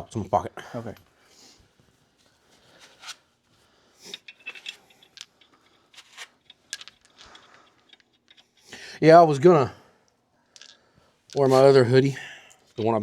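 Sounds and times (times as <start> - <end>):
hand tools clicking and scraping: 4.0 - 8.8, 10.6 - 11.8.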